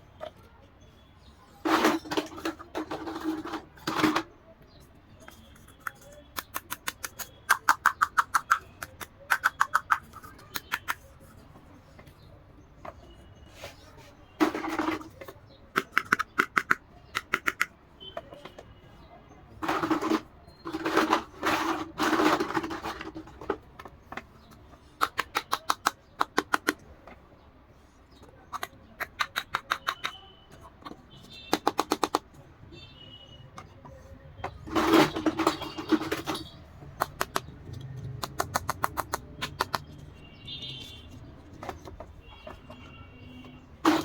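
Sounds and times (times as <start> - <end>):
plastic parts rustling: 1.6 - 4.3, 13.6 - 15.4, 19.6 - 24.4, 34.4 - 37.8, 40.2 - 44.0
sharp plastic clicks: 5.2 - 11.1, 14.5 - 18.5, 19.6 - 27.2, 28.2 - 32.4, 34.5 - 40.0.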